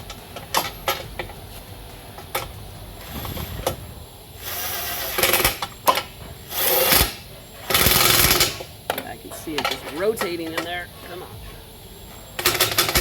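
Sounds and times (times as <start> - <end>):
cordless power tool running: 3.0 - 8.6.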